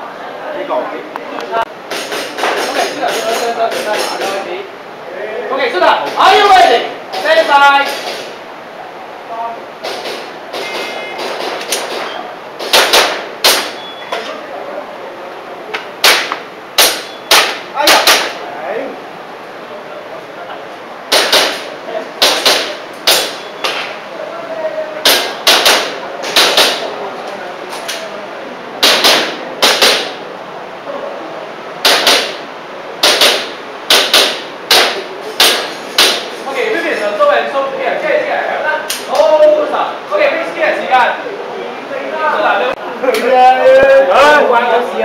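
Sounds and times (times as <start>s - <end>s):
airsoft pistol shots: 9.8s - 13.8s, 16.0s - 18.4s, 21.1s - 23.4s, 25.0s - 26.9s, 28.8s - 30.2s, 31.8s - 32.4s, 33.0s - 36.3s.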